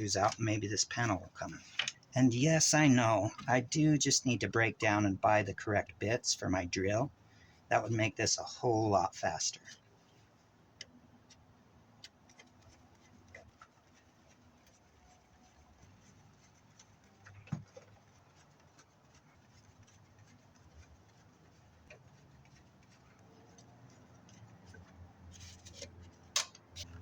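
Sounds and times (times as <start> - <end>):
faint clicks and ticks: 0.0 - 2.2, 9.6 - 27.0.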